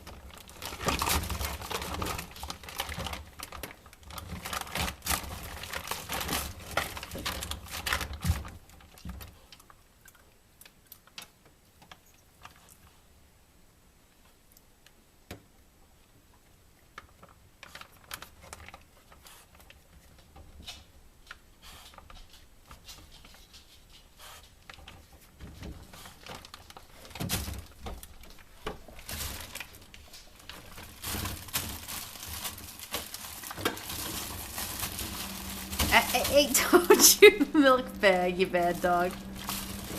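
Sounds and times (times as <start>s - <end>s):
packaging crinkling: 0.0s - 9.6s, 25.8s - 39.9s
puppy rummaging in fridge: 0.0s - 9.8s, 17.0s - 39.9s.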